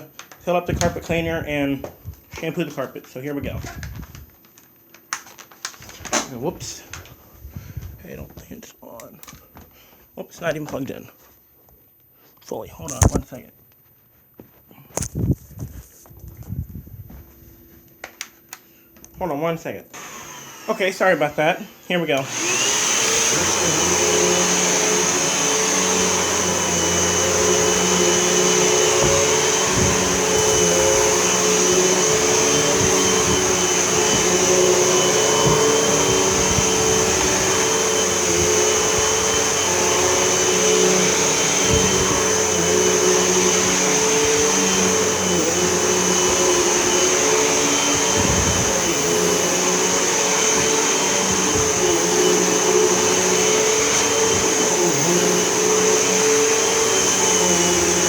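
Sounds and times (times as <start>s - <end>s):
vacuum cleaner motor whine: 12.8s - 13.2s, 19.0s - 58.0s.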